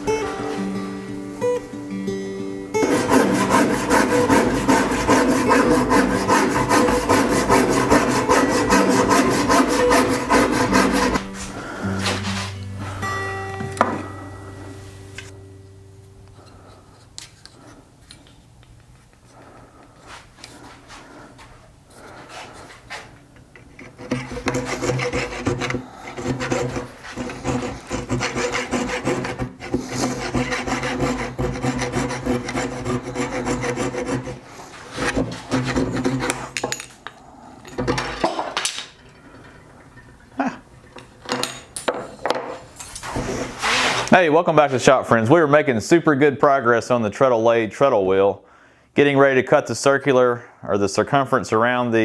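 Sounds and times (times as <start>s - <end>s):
hand tool scraping wood: 2.8s - 13.0s, 22.0s - 36.8s, 43.0s - 44.2s.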